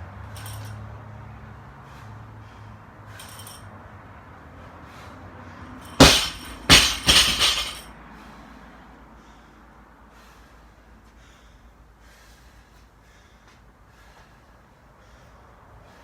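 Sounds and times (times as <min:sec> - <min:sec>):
barbell crashing on floor: 0:05.8 - 0:07.9
metal rattling bounces: 0:05.8 - 0:07.9.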